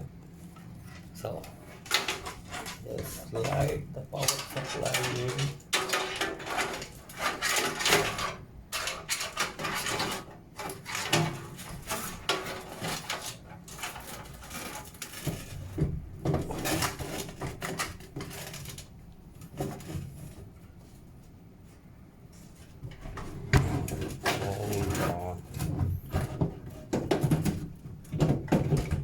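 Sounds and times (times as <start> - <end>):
power supply scraping in metal case: 0.9 - 15.8.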